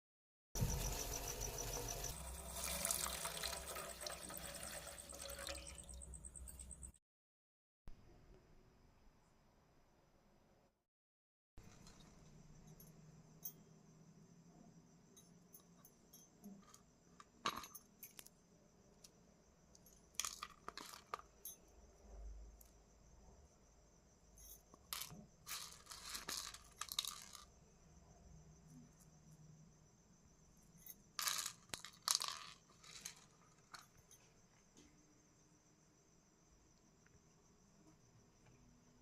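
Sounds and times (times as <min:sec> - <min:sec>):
water pouring into a vessel: 0:00.6 - 0:06.2.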